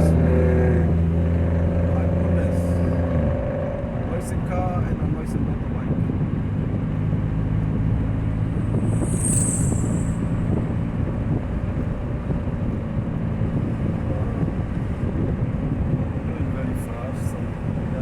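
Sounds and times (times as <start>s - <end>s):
road noise: 0.0s - 18.0s
leaking exhaust drone: 7.7s - 11.2s
brief high hiss: 8.8s - 10.3s.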